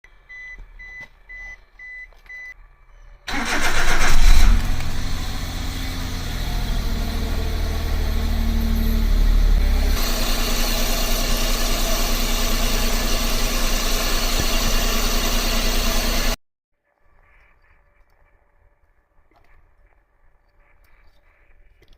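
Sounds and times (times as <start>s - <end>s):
engine cranking and idling: 0.1s - 16.4s
harsh bright mechanical noise: 3.3s - 16.4s.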